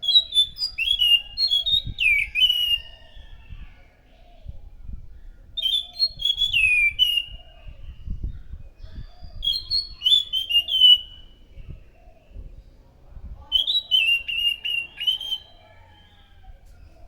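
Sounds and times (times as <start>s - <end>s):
thrush singing whistled notes: 0.0s - 3.4s, 5.6s - 7.6s, 9.2s - 11.5s, 13.5s - 16.0s.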